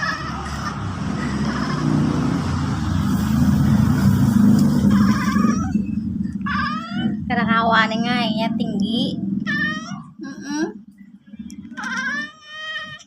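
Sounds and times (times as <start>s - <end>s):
vehicle engine driving past: 0.0s - 10.1s.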